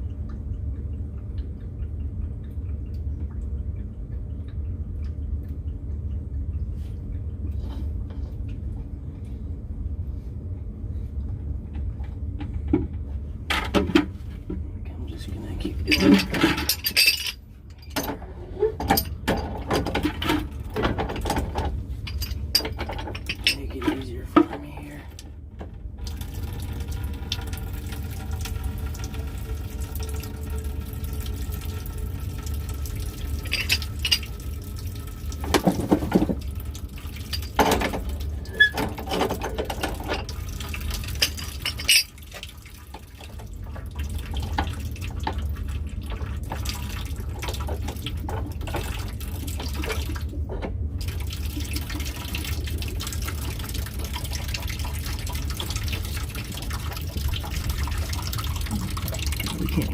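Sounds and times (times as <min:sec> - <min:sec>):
water draining from pipes: 0:00.0 - 0:59.9
pipe knocks and clanks: 0:35.4 - 0:36.5, 0:37.3 - 0:40.4.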